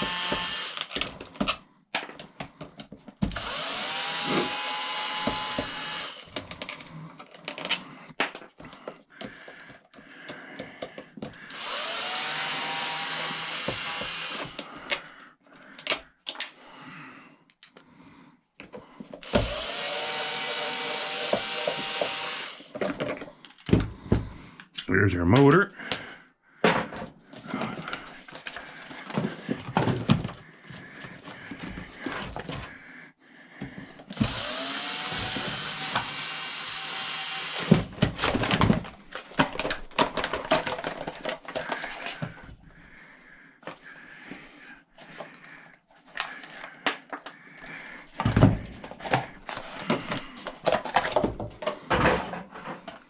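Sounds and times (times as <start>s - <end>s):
power tool spinning: 0.0s - 1.1s, 3.3s - 6.5s, 11.5s - 14.8s, 19.2s - 23.0s, 34.1s - 42.2s
clicks and knocks of handled parts: 0.3s - 3.4s, 5.2s - 11.5s, 13.6s - 16.6s, 21.3s - 24.0s, 37.7s - 42.6s, 45.0s - 53.0s.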